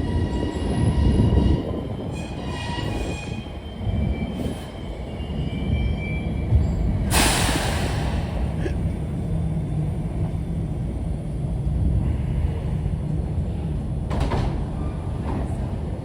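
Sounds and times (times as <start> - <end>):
subway train rumbling: 0.0 - 16.0
air brake hiss: 7.1 - 8.5.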